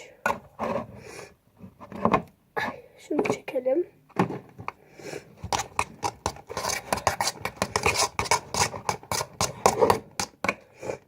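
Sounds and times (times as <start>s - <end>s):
slime stirred in a bowl: 5.2s - 11.0s.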